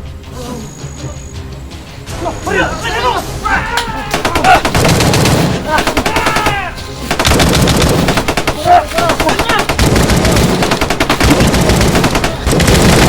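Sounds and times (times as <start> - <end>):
voices shouting: 2.1 - 7.0, 8.3 - 9.8
rapid automatic gunfire: 4.2 - 13.0.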